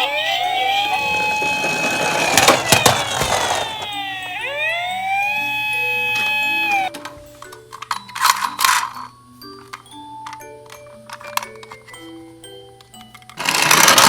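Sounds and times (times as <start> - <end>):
toy siren wailing: 0.0 - 6.9.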